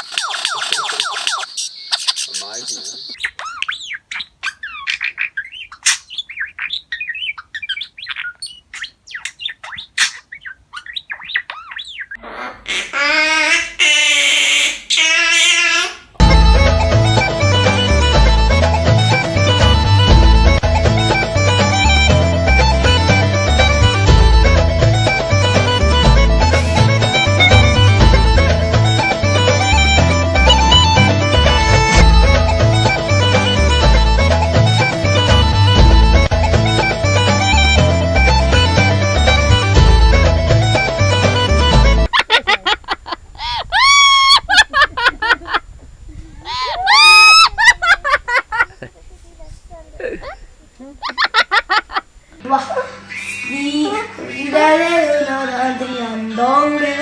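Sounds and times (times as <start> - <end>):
parrot chirping and squawking: 0.0 - 16.2, 53.0 - 54.7
instrumental background music: 16.2 - 42.1.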